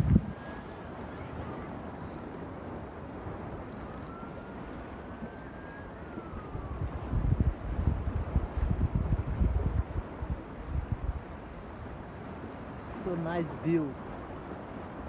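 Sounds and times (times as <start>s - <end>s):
faint high whine: 0.0s - 7.9s
wind gusts buffeting microphone: 0.0s - 15.0s.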